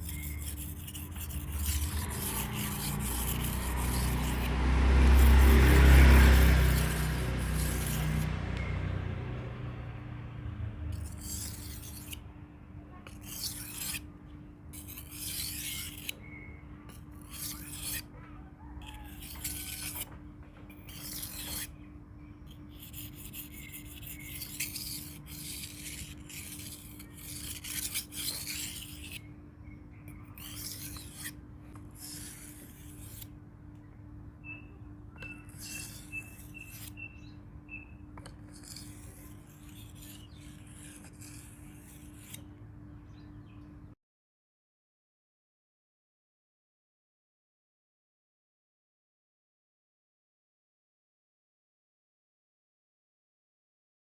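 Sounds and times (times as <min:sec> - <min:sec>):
knife scraping on whetstone: 0:00.0 - 0:08.7, 0:10.9 - 0:12.2, 0:13.0 - 0:14.1, 0:14.7 - 0:29.3, 0:30.1 - 0:33.4, 0:35.2 - 0:42.5.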